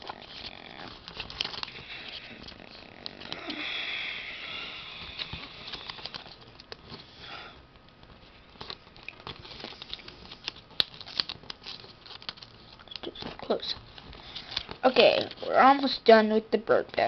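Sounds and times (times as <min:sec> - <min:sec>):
paper rustling and crinkling: 0:00.0 - 0:03.4, 0:05.0 - 0:07.2, 0:08.0 - 0:16.0
paper fold clicks: 0:08.6 - 0:15.4.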